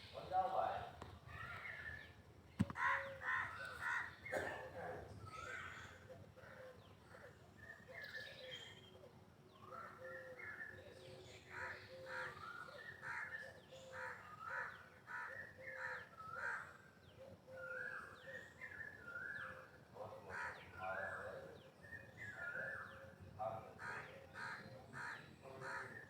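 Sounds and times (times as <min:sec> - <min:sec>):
peacock calling: 0:02.6 - 0:04.4, 0:11.4 - 0:21.5.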